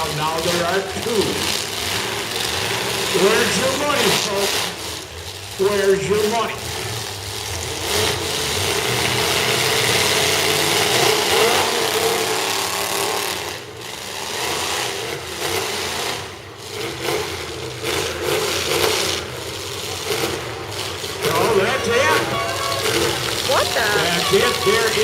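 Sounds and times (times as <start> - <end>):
car engines revving hard: 0.0 - 25.0
loud noisy din: 21.2 - 25.0.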